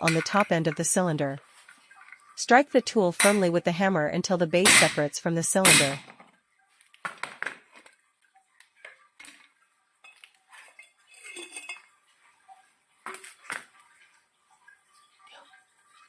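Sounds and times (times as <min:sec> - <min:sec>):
metal clinks and knocks: 0:10.0 - 0:11.9.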